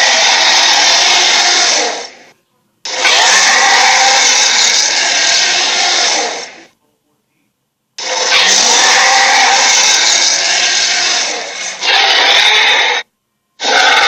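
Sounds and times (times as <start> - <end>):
raspy monster roar: 0.0 - 2.2, 2.9 - 6.7, 8.0 - 13.0, 13.6 - 14.0.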